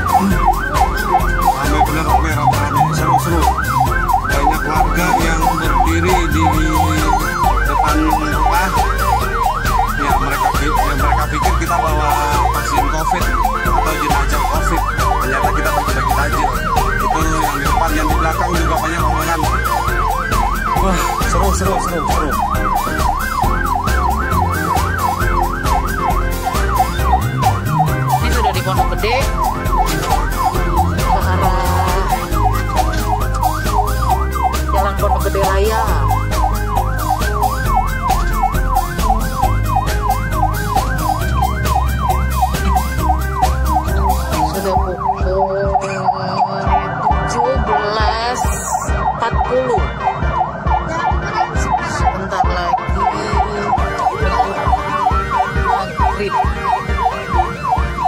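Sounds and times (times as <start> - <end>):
ambulance sirens: 0.0 - 58.0
engine and road rumble: 0.0 - 58.0.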